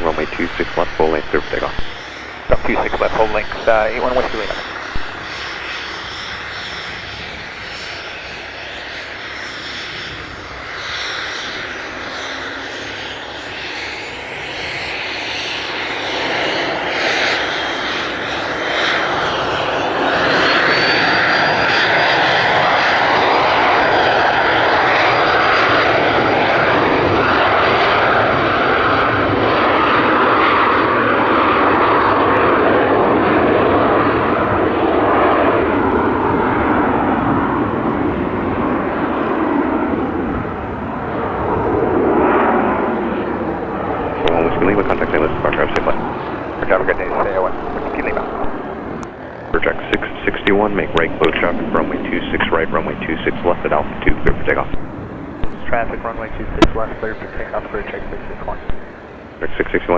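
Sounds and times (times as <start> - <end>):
jet engines roaring: 0.0 - 59.9
high engine whine rising: 39.9 - 59.9.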